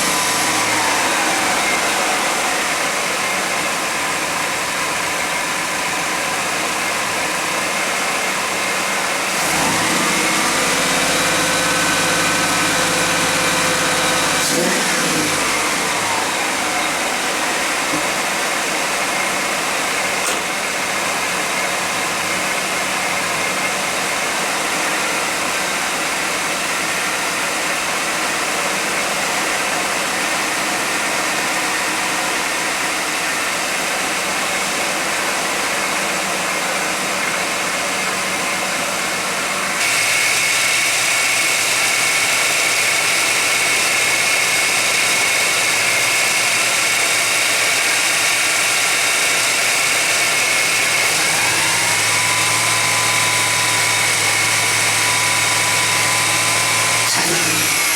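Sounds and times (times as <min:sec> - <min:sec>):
short rising tone: 0:00.0 - 0:04.8
loud rushing noise: 0:00.0 - 0:06.2
steady high whine: 0:00.0 - 0:07.4
car engine idling: 0:00.0 - 0:57.1.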